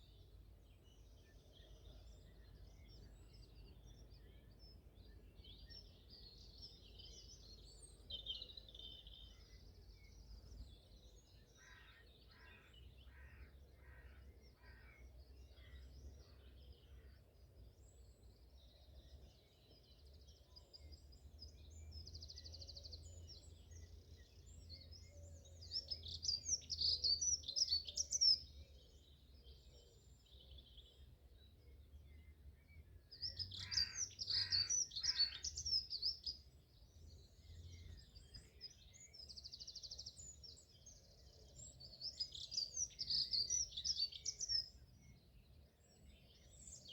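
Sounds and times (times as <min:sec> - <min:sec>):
birds singing and chirping: 0:17.8 - 0:46.9.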